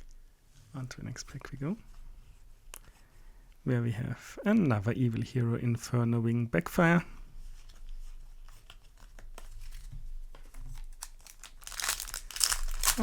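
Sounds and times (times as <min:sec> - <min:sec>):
cards rustling and clicking: 0:08.4 - 0:13.0
foil wrapper crinkling and tearing: 0:10.6 - 0:13.0.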